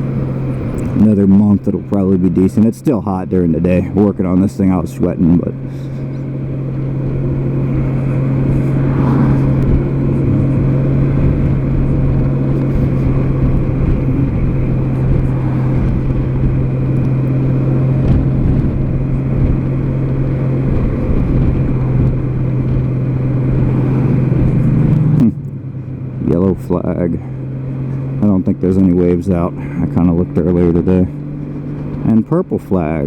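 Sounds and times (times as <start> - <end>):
low wind: 0.0 - 33.0
motorcycle engine humming: 0.0 - 33.0
road rumble: 0.0 - 33.0.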